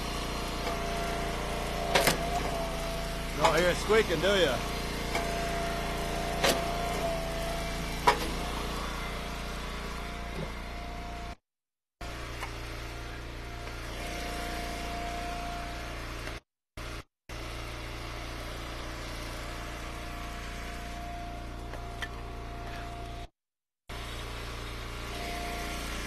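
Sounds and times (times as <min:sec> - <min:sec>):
wood splitter engine running: 0:00.0 - 0:11.4, 0:12.0 - 0:23.3, 0:23.9 - 0:26.0.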